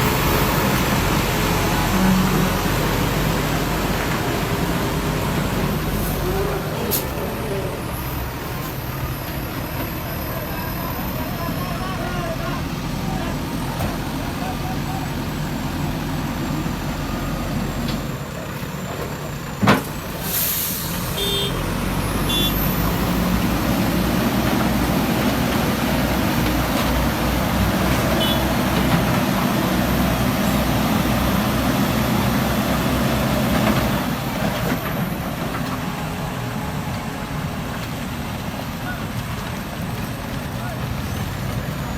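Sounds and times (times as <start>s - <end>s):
diesel truck engine running: 0.0s - 41.9s
sharp hiss: 20.2s - 21.2s.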